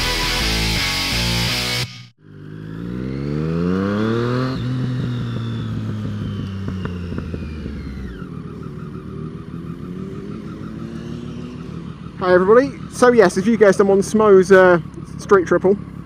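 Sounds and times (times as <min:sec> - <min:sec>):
rock music: 0:00.0 - 0:02.1
motorcycle engine revving: 0:00.0 - 0:16.0.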